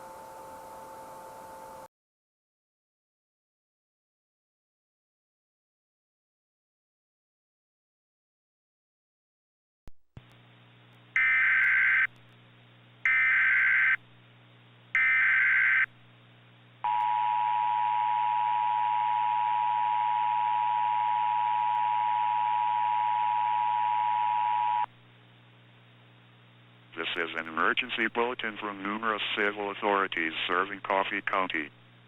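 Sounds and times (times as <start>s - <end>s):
faint low hum: 10.2s - 32.0s
data signal bursts: 11.2s - 12.1s, 15.0s - 15.9s.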